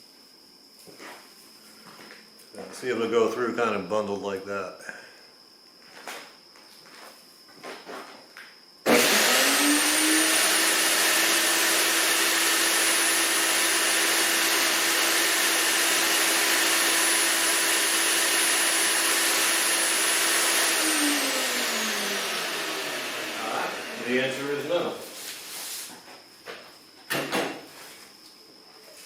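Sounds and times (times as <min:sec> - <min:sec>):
electric wood chipper motor whining: 0:08.9 - 0:25.0.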